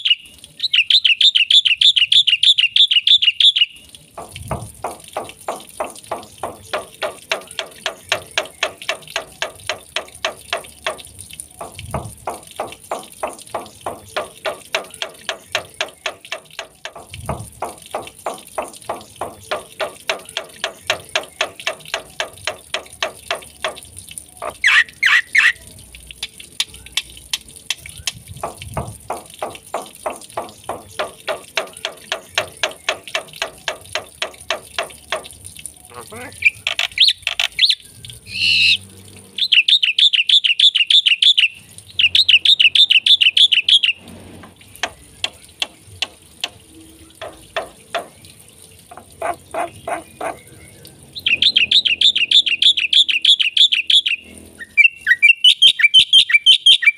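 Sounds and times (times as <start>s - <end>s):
shrill high bird calls: 0.0s - 3.8s, 35.9s - 38.8s
bird calling harsh repeated notes: 0.0s - 3.9s, 4.8s - 25.6s, 27.8s - 44.0s, 51.2s - 56.9s.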